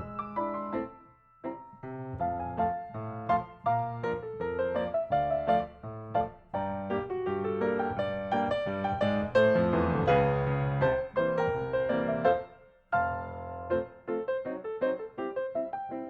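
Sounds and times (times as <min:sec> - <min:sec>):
piano music: 0:00.0 - 0:16.0.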